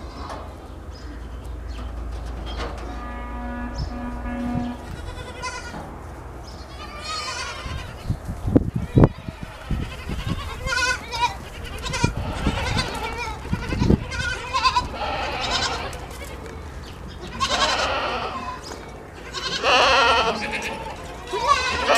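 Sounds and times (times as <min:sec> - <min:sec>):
goats bleating: 0:03.0 - 0:05.9, 0:06.6 - 0:08.2, 0:08.8 - 0:21.9.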